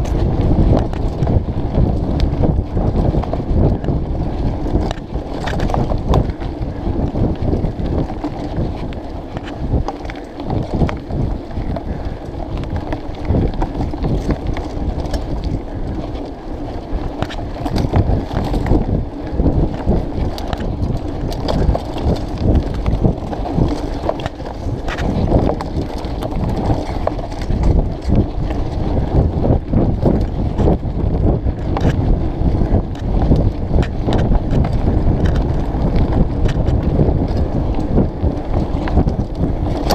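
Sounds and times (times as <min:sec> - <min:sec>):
bike knocking and rattling: 0:00.0 - 0:39.9
wind buffeting microphone: 0:00.0 - 0:39.9.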